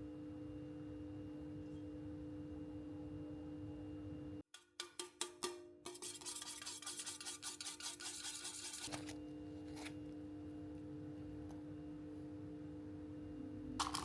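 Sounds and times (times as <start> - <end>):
whisk tapping bowl: 4.6 - 9.1
whisk scraping batter: 4.8 - 10.0.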